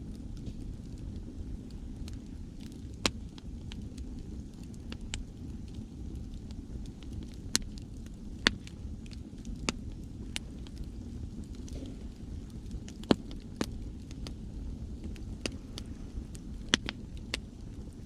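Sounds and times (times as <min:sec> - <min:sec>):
campfire crackling and popping: 0:00.0 - 0:18.0.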